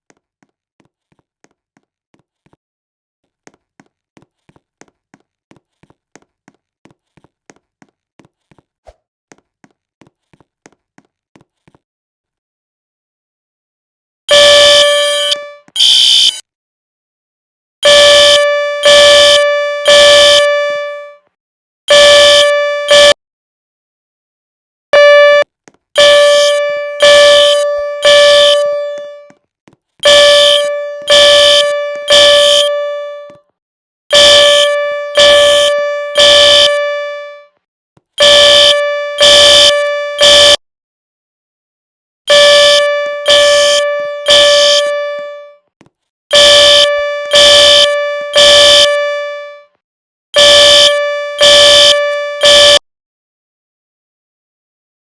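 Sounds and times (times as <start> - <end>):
fire alarm horn blasts: 14.3 - 16.4, 17.8 - 21.2, 21.9 - 23.2, 25.0 - 29.4, 30.0 - 33.4, 34.1 - 37.5, 38.2 - 40.6, 42.3 - 45.6, 46.3 - 49.8, 50.4 - 52.8.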